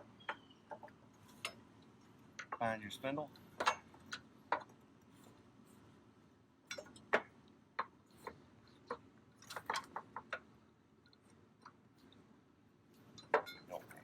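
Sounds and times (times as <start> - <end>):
light metallic clicks and taps: 1.4 - 2.6.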